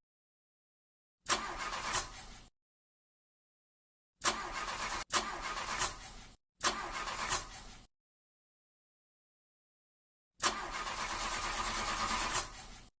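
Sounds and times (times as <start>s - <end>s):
car engine cranking: 10.4s - 12.4s.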